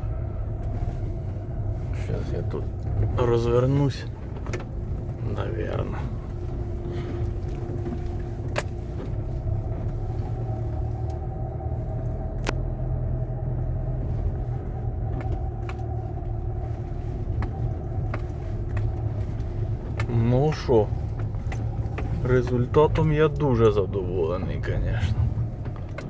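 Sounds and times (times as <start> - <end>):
car engine and road rumble: 0.0 - 26.0
light sharp clicks: 12.0 - 12.7.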